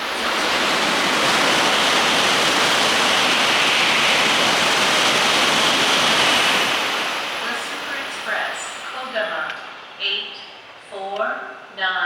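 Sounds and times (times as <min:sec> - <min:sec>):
train rushing past: 0:00.0 - 0:10.9.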